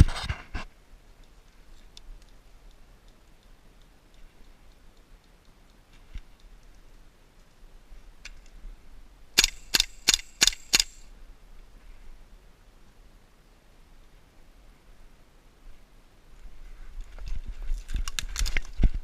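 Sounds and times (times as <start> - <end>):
airsoft rifle shots: 9.4 - 11.0.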